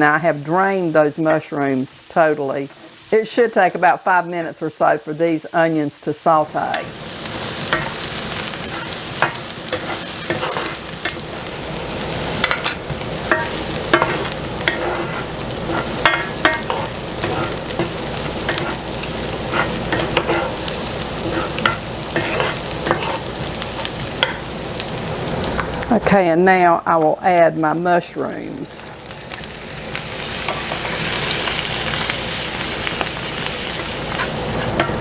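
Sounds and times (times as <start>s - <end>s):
onions sizzling in a skillet: 0.0s - 35.0s
utensil scraping a pan: 6.7s - 11.5s, 12.4s - 23.3s, 33.7s - 35.0s.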